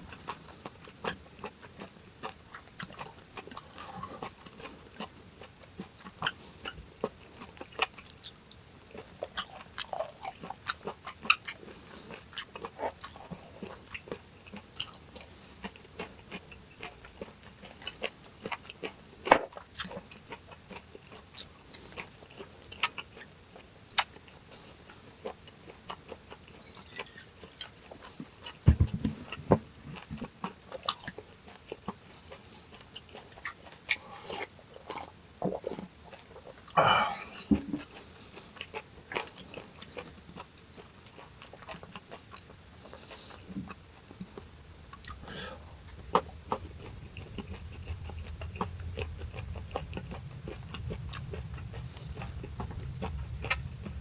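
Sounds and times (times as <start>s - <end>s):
close-miked chewing: 0.0s - 54.0s
dull knocks: 28.6s - 30.2s.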